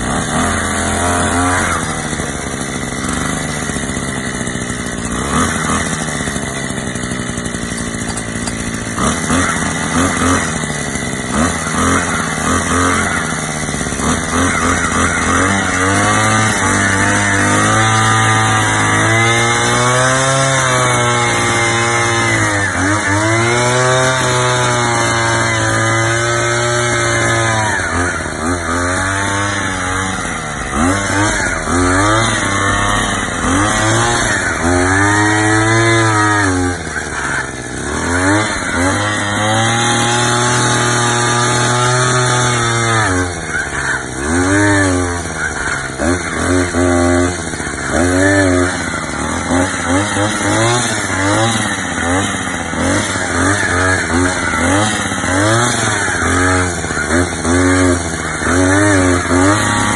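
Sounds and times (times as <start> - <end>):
earth auger engine revving: 0.0 - 59.9.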